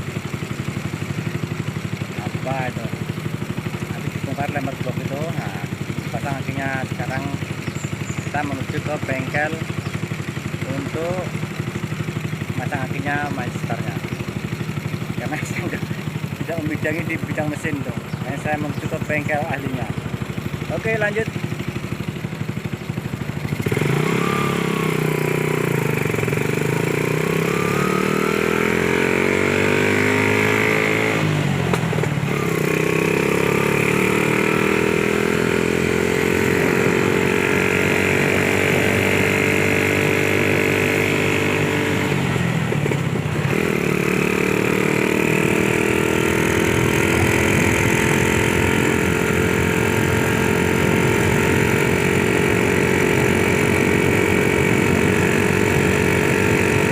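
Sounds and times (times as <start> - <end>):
small motorcycle engine running: 0.0 - 56.9.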